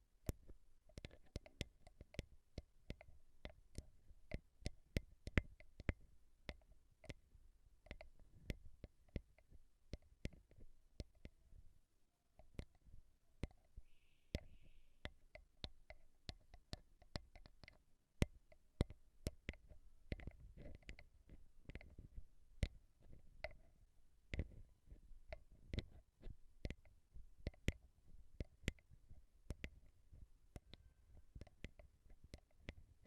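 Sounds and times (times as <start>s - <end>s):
tapping on a microphone: 0.0s - 11.4s, 12.4s - 33.0s.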